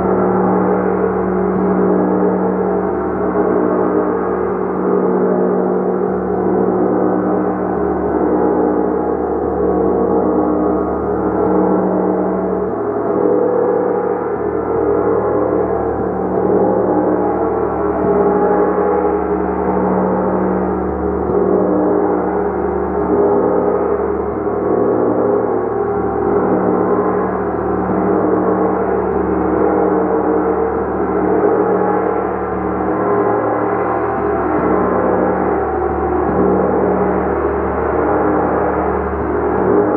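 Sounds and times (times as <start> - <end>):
large gong sustained tones: 0.0 - 39.9.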